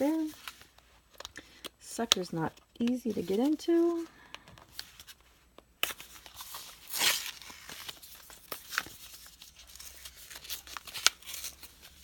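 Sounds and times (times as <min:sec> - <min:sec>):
packaging crinkling: 0:05.8 - 0:12.0
packaging ripping: 0:05.8 - 0:12.0.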